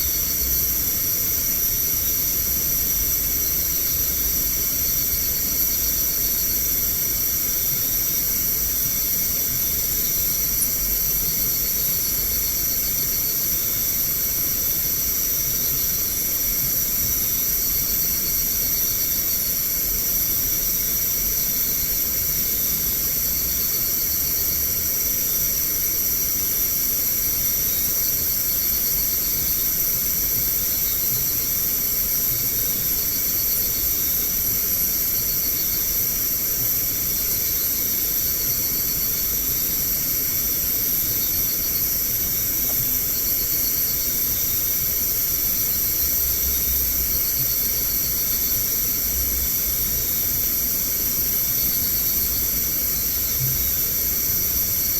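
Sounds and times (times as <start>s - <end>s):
shrill pulsing insect trills: 0.0s - 54.9s
steady high hiss: 0.0s - 54.9s.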